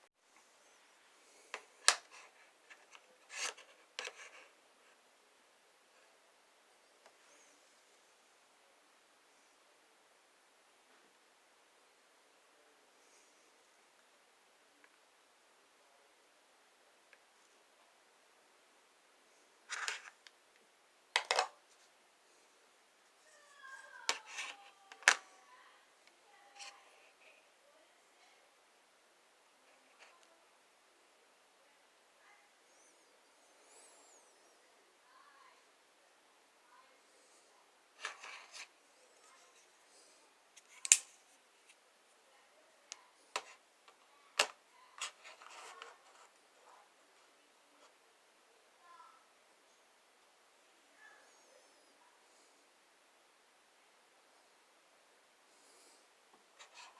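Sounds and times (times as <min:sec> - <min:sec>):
small hard objects scraping: 0:19.7 - 0:20.2.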